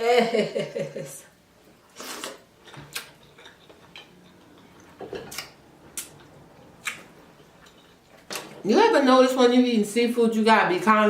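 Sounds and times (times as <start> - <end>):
lip smacks: 2.0 - 4.1, 6.8 - 7.9
wet mouth clicks: 6.8 - 7.1.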